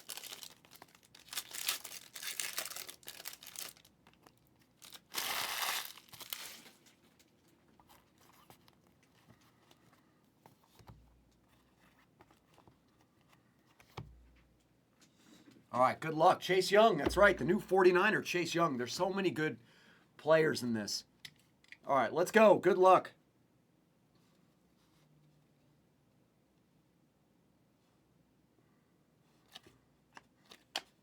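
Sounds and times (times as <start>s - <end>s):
foil wrappers crinkling and tearing: 0.0s - 7.1s
cards being handled: 0.0s - 14.4s, 17.0s - 17.6s.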